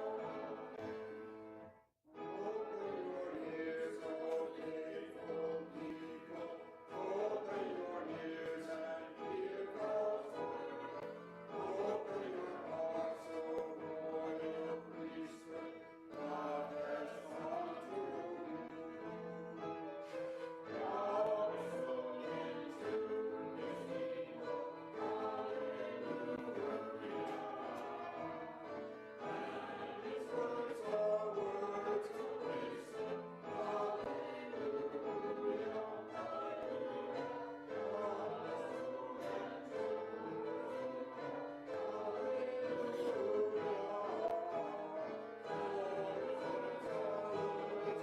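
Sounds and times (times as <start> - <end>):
choir singing a hymn: 0.0 - 1.6, 2.2 - 48.0.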